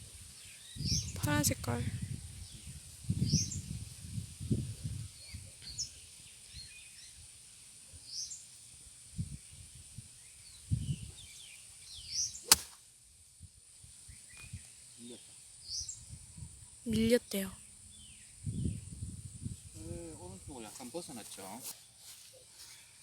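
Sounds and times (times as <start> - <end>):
wind on microphone: 0.0 - 6.0, 9.1 - 11.3, 15.8 - 17.1, 17.9 - 20.6
birds chirping: 10.2 - 12.6, 16.9 - 18.9
golf club striking ball: 12.4 - 12.8.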